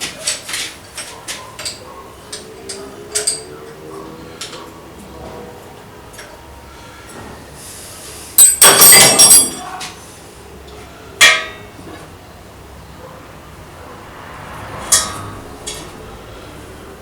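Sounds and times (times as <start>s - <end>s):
ringing metal clanks: 8.4s - 9.8s, 11.2s - 11.8s, 14.9s - 15.9s.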